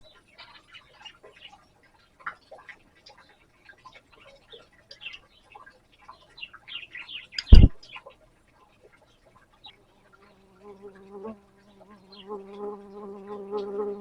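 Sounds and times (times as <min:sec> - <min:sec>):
bird chirps and ticking calls: 0:00.0 - 0:14.0
loud brief thump: 0:07.5 - 0:07.8.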